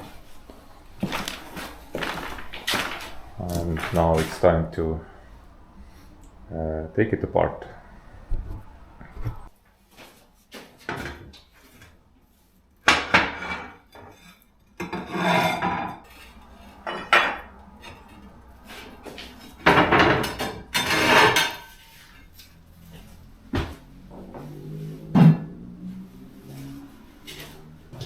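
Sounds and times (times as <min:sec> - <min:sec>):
rattling scraping clatter: 0:00.0 - 0:06.7, 0:13.1 - 0:23.4
oven parts clanking: 0:12.9 - 0:22.6.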